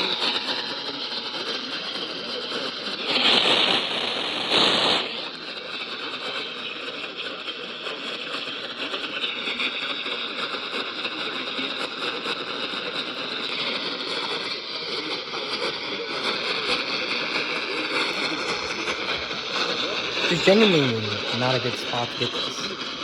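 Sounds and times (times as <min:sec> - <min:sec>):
radio static hiss and crackle: 0:00.0 - 0:00.6, 0:02.8 - 0:07.0, 0:17.8 - 0:23.0.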